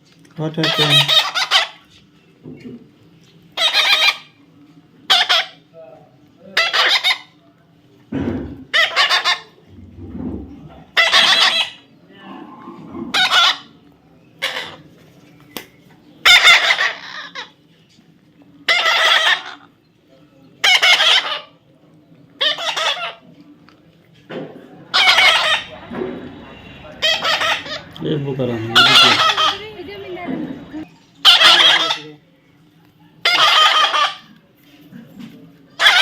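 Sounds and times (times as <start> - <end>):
baby parrot calling: 0.6 - 1.9, 3.6 - 4.4, 5.1 - 5.6, 6.6 - 7.4, 8.7 - 9.6, 10.9 - 11.8, 13.1 - 13.8, 14.4 - 14.8, 16.2 - 17.6, 18.7 - 19.7, 20.6 - 21.5, 22.4 - 23.2, 24.9 - 32.2, 33.2 - 34.3, 35.8 - 36.0.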